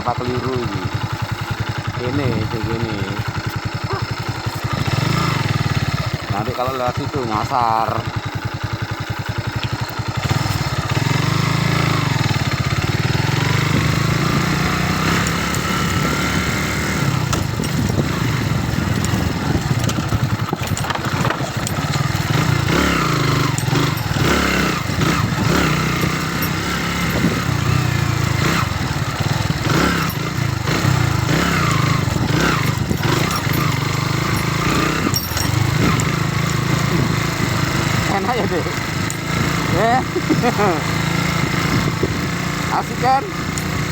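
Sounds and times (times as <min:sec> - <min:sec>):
motorcycle engine running: 0:00.0 - 0:43.9
short knocks and rattles: 0:17.3 - 0:24.5, 0:31.8 - 0:38.1.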